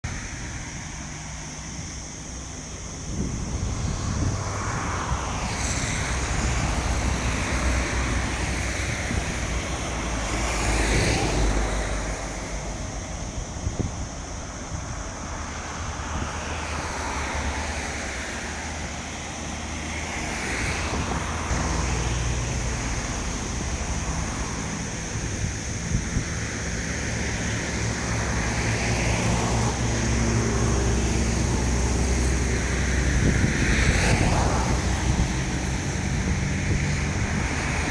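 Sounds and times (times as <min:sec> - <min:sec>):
low traffic rumble: 0:00.0 - 0:37.9
vehicles passing: 0:00.0 - 0:37.9.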